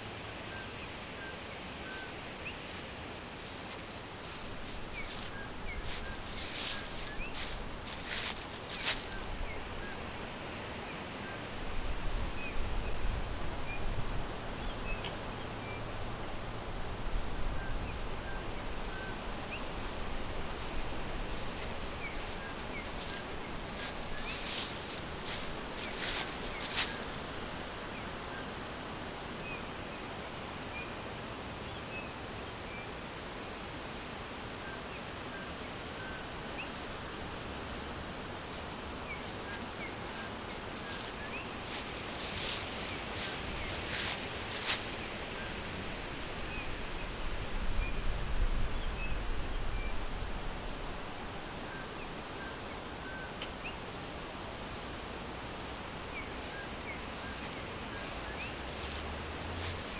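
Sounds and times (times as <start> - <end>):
rustling hiss: 0.0 - 9.8, 15.2 - 29.0, 33.1 - 46.4, 50.6 - 59.9
small birds chirping: 0.2 - 9.7, 17.9 - 27.6, 35.9 - 45.2, 51.9 - 59.9
sharp crackles: 3.4 - 9.3, 21.4 - 27.2, 39.2 - 45.1.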